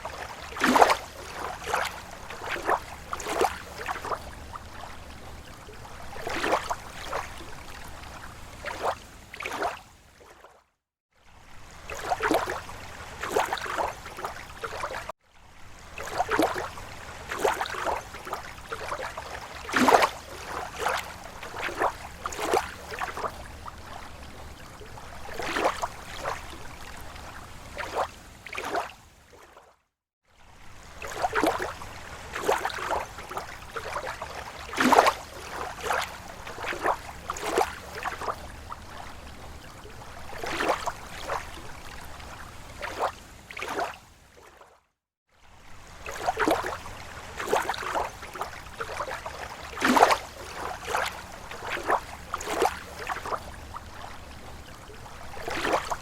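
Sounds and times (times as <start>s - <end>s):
small waves lapping on shore: 0.0s - 56.0s.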